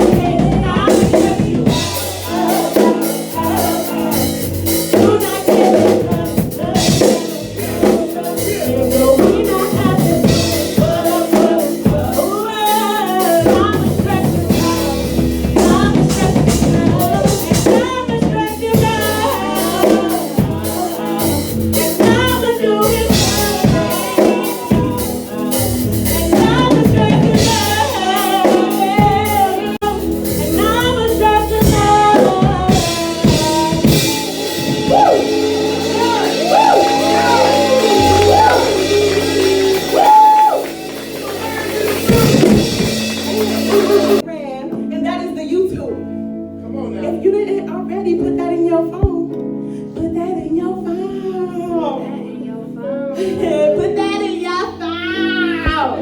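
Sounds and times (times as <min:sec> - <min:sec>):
drum kit beat: 0:00.0 - 0:44.3
person singing: 0:00.0 - 0:44.3.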